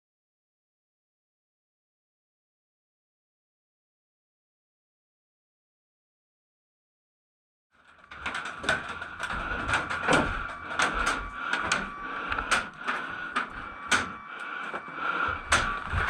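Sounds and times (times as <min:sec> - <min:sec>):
steady background hum: 0:07.8 - 0:16.0.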